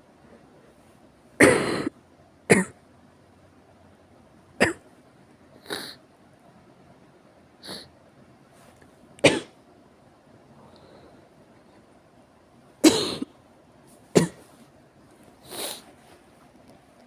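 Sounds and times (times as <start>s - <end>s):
person coughing: 1.4s - 1.9s, 9.2s - 9.6s, 12.8s - 13.3s, 14.2s - 14.5s.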